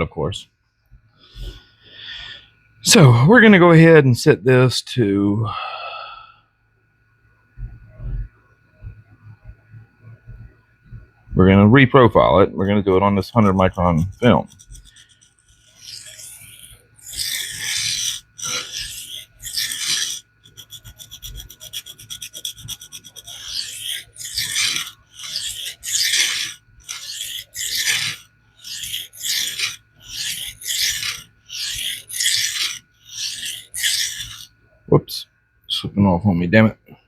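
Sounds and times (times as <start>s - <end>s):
knife scraping on abrasive film: 13.2s - 34.5s.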